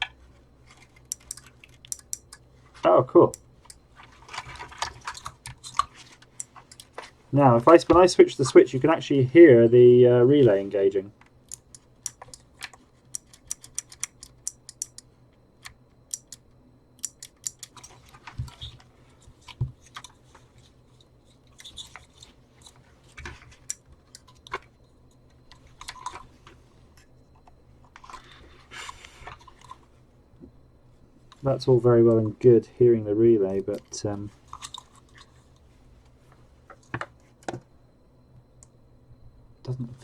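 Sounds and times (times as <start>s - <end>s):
soft handling rustles: 0.0s - 1.9s, 2.5s - 9.4s, 17.8s - 32.8s, 33.6s - 37.7s.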